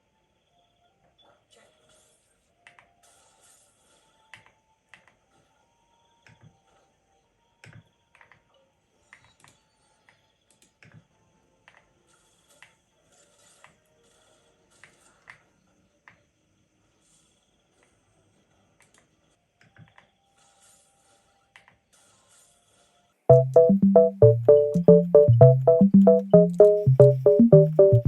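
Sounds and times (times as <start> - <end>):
quiet background music: 23.3 - 28.0.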